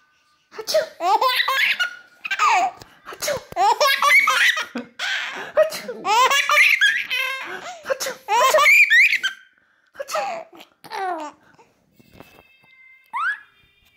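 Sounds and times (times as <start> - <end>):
baby laughing loudly: 1.0 - 11.4.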